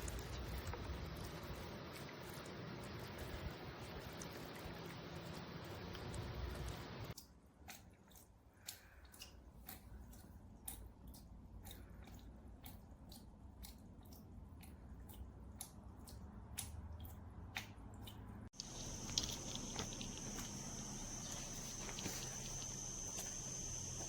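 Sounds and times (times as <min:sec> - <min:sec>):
water dripping and splashing: 0:00.0 - 0:10.3, 0:13.0 - 0:24.0
steady spray hiss: 0:18.6 - 0:24.0.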